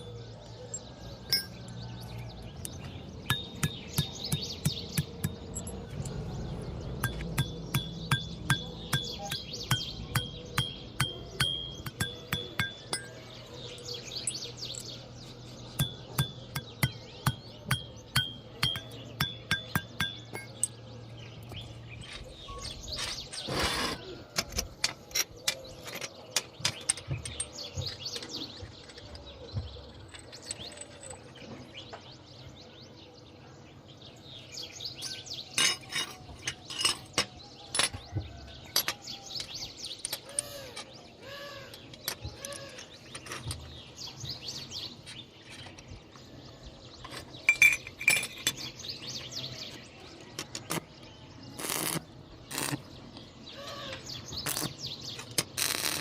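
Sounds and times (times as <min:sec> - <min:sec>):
birds chirping: 0:00.0 - 0:56.0
metal clinks and knocks: 0:00.7 - 0:23.5, 0:24.4 - 0:31.7, 0:35.0 - 0:41.0, 0:47.0 - 0:50.8.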